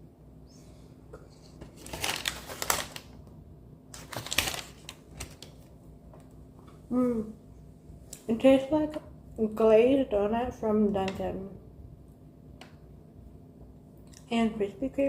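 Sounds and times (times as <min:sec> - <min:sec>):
crackling and rustling of food: 0:01.2 - 0:06.8.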